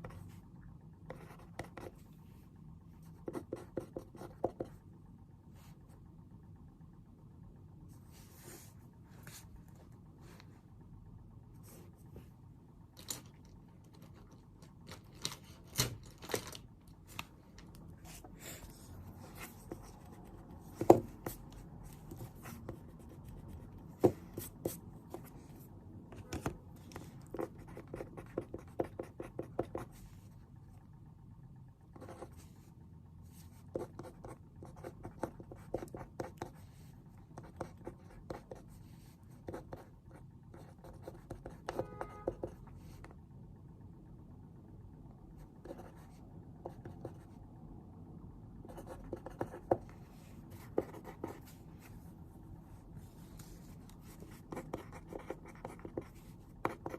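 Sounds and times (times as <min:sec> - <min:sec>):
pen scratching on paper: 0:01.1 - 0:02.0, 0:26.3 - 0:30.0, 0:33.5 - 0:36.7, 0:37.4 - 0:38.7, 0:40.6 - 0:42.6, 0:45.6 - 0:46.0, 0:48.7 - 0:49.9, 0:50.5 - 0:51.6, 0:53.4 - 0:56.9.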